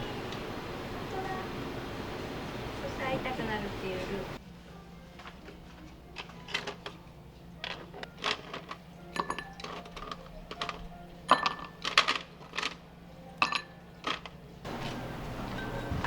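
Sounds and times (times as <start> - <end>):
plates and cutlery clinking: 7.6 - 12.8, 13.4 - 16.0.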